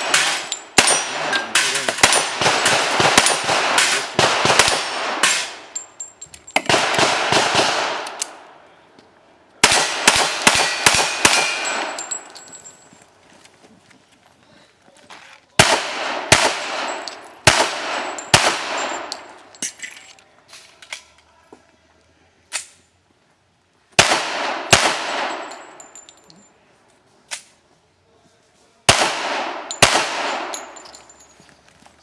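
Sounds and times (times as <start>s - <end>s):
pistol shots echoing: 0.0s - 5.8s, 6.6s - 8.5s, 9.6s - 12.3s, 15.6s - 19.3s, 24.0s - 25.9s, 28.9s - 30.9s
lighter gun cracks: 8.0s - 8.4s.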